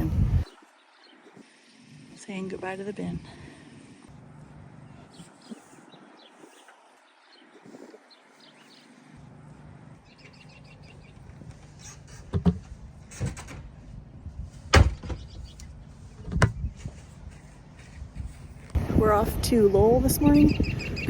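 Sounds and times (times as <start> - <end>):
low steady rumble: 0.0 - 0.5, 9.2 - 21.0
birds chirping: 0.0 - 21.0.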